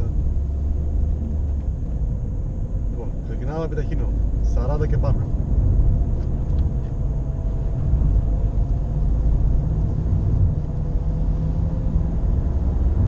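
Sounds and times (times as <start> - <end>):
car cabin rumble: 0.0 - 13.0
droning hum: 0.0 - 13.0.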